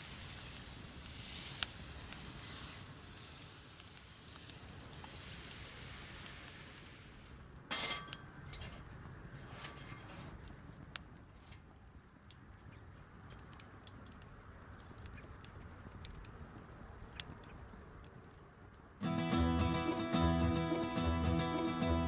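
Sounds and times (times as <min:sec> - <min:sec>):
food sizzling in a pan: 0:00.0 - 0:07.5.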